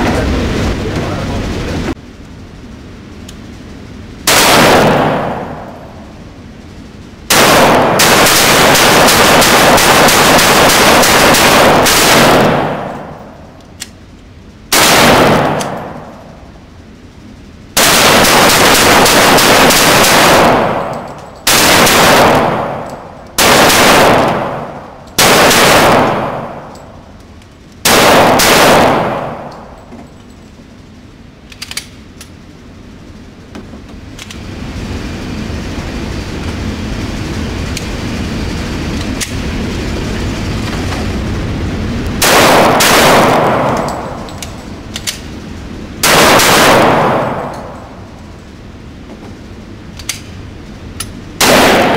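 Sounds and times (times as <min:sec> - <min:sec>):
pistol shots: 0:04.3 - 0:06.0, 0:07.3 - 0:13.4, 0:14.7 - 0:16.3, 0:17.8 - 0:26.9, 0:27.8 - 0:29.9, 0:42.2 - 0:45.1, 0:46.0 - 0:48.0, 0:51.4 - 0:51.9.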